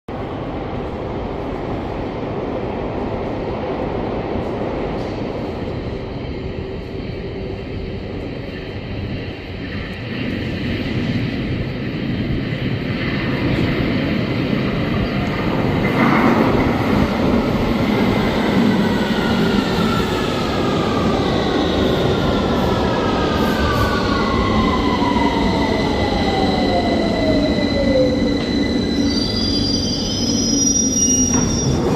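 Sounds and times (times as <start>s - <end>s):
train rumble: 0.1s - 31.9s
whining tones sliding downward: 21.8s - 31.9s.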